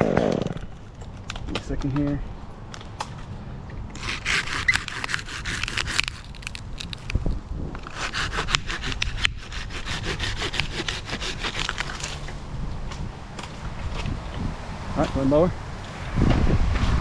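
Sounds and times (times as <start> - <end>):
handsaw cutting through branch: 3.9 - 7.1, 7.8 - 12.3.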